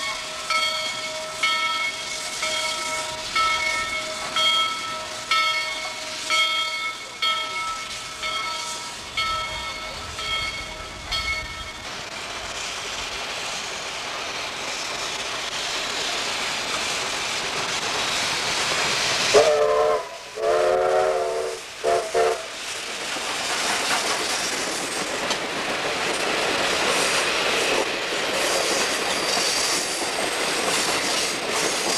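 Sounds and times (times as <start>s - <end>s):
train wheels clattering: 0.0s - 31.9s
train horn blasts: 19.3s - 22.6s.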